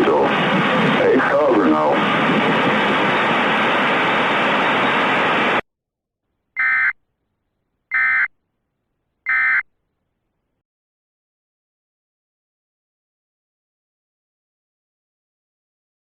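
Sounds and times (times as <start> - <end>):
radio static hiss: 0.0 - 5.6
short buzzy data bursts: 6.6 - 6.9, 7.9 - 8.3, 9.3 - 9.6.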